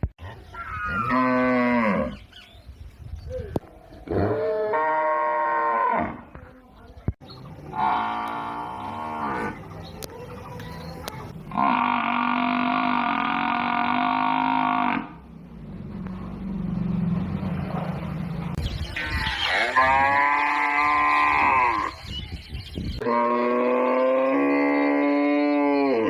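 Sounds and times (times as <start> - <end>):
cattle mooing: 11.5 - 15.2.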